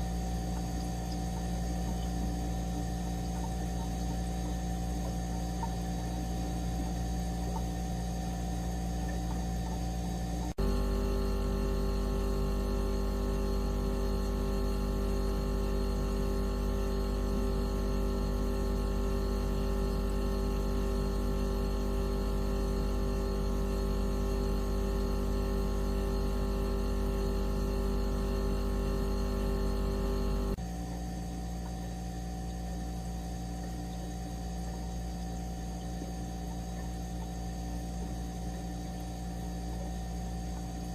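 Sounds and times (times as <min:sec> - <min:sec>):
electronic tone drone: 0:10.6 - 0:30.6.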